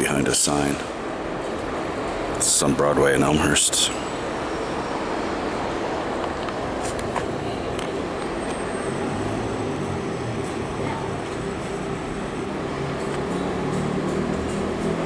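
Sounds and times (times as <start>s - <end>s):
heavy engine running low: 0.0s - 15.0s
traffic rumble: 0.0s - 15.0s.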